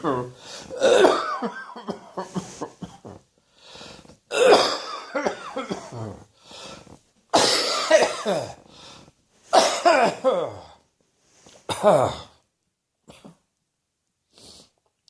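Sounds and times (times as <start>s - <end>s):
person coughing: 0.0s - 3.2s, 4.3s - 6.2s, 7.4s - 8.6s, 9.5s - 10.8s, 11.7s - 12.4s
breath drawn in: 6.4s - 7.0s.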